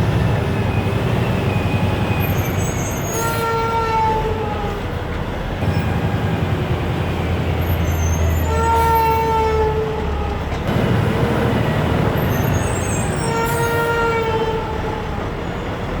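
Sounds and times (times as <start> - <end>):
horn blasts: 2.6 - 4.9, 5.6 - 15.3.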